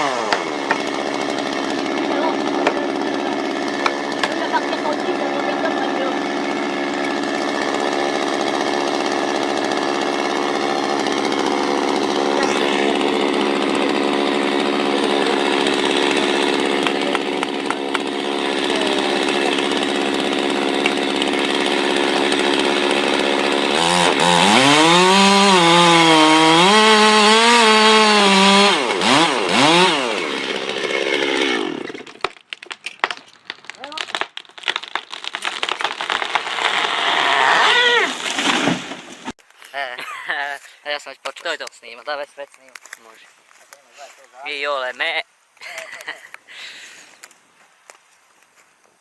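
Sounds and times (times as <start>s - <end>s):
chainsaw revving: 0.0s - 32.2s, 35.4s - 39.4s
chainsaw running: 0.0s - 32.3s, 33.7s - 39.4s.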